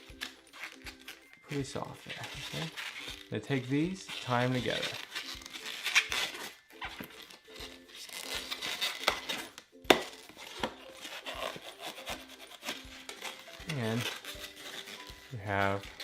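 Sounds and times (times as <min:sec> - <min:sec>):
balloon rubbing and squeaking: 0:00.0 - 0:16.0
balloon snapping: 0:08.4 - 0:13.4.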